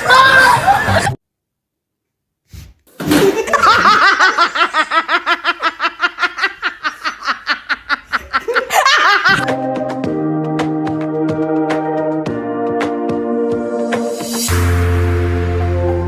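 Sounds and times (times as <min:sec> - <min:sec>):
laughter-like vocal pulses: 0:03.1 - 0:09.5
music: 0:09.4 - 0:16.0.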